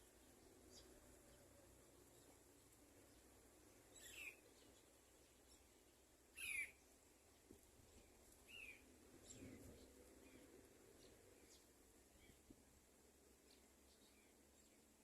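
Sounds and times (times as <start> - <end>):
nestlings chirping for food: 2.1 - 12.4.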